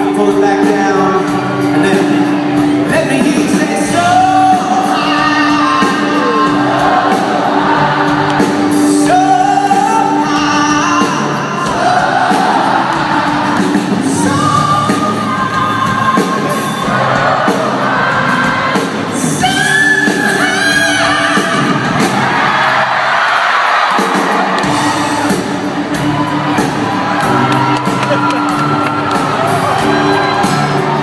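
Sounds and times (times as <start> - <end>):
man singing: 0.0 - 7.2, 8.7 - 17.0, 18.3 - 21.9
live pop-rock band: 0.0 - 31.0.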